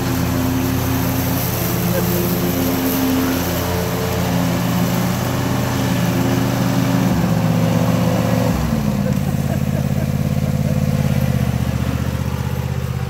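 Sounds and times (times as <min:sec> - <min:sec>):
riding lawnmower engine running: 0:00.0 - 0:13.0.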